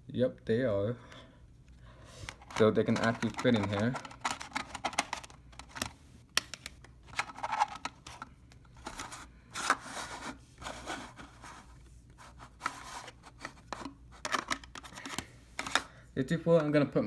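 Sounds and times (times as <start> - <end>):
scraping and rubbing: 2.1 - 5.9, 7.1 - 15.0
plastic clicks and clacks: 2.3 - 9.8, 13.4 - 15.9.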